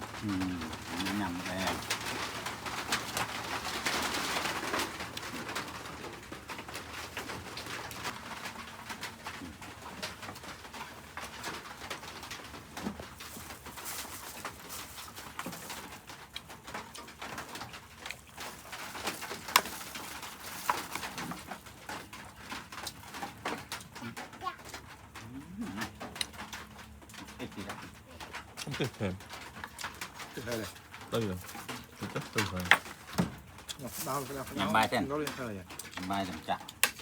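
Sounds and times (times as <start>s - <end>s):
doves cooing: 24.9s - 35.4s.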